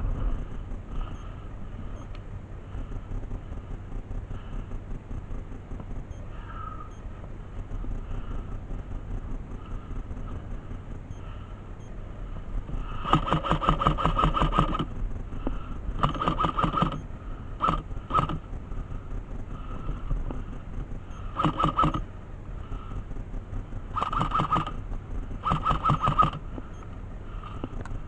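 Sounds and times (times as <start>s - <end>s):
airsoft gun firing bursts: 13.0s - 14.9s, 16.0s - 17.0s, 17.6s - 18.4s, 21.3s - 22.0s, 23.9s - 24.8s, 25.4s - 26.4s.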